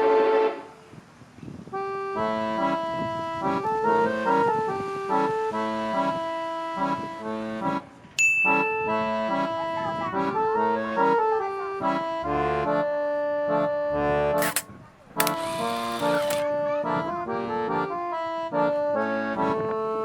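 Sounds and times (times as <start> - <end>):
bouncy accordion-like tune: 1.8 - 20.0
bright ding: 8.2 - 8.9.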